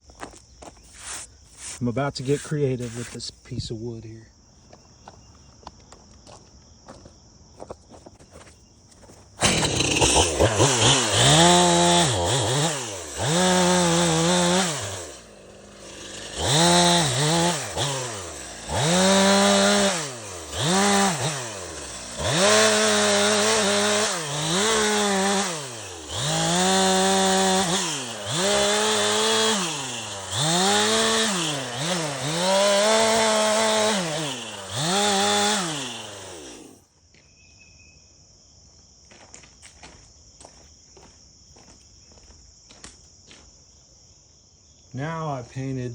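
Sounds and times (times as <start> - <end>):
chainsaw revving cutting wood: 1.0 - 3.2, 9.4 - 36.8.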